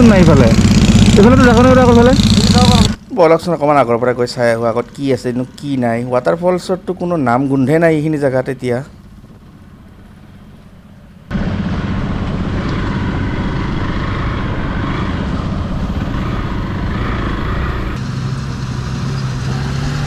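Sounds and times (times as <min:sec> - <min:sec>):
motorcycle engine running: 0:00.0 - 0:03.1, 0:09.0 - 0:20.0.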